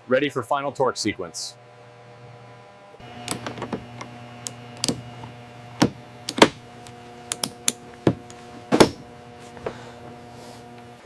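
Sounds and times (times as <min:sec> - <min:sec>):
steady hum: 0:00.0 - 0:11.0
tools clicking on metal: 0:07.3 - 0:08.4.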